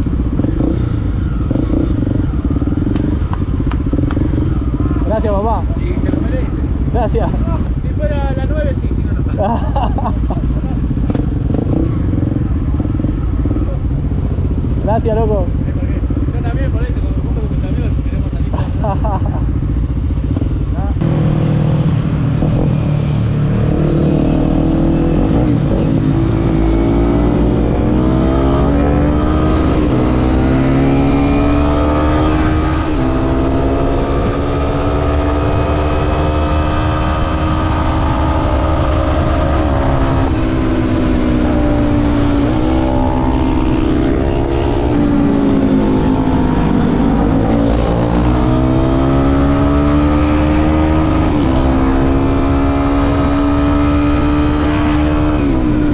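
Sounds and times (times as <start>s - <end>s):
motorcycle engine shifting gears: 0.0s - 5.1s, 19.0s - 55.9s
wind rumble on microphone: 20.2s - 55.9s.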